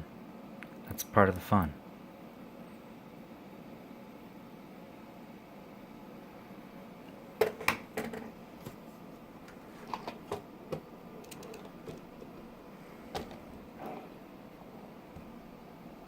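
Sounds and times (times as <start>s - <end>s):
plastic parts clicking: 11.2s - 12.0s.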